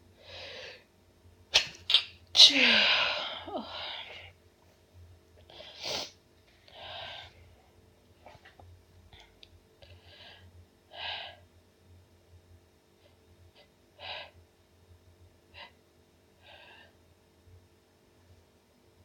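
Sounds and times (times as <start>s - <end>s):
woman sneezing: 1.6s - 3.8s.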